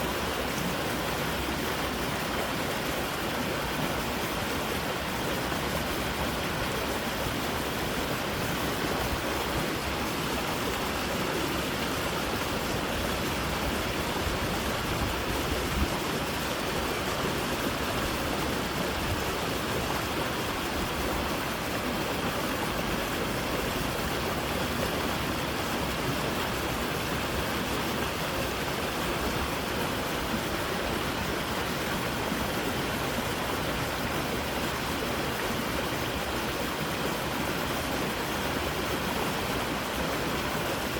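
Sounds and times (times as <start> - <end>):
creek water rushing: 0.0 - 40.9.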